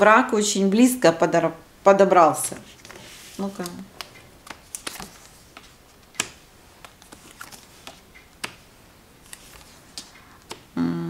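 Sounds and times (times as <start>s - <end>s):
tarot cards clicking and tapping: 2.5s - 10.8s
voice humming: 10.7s - 11.0s.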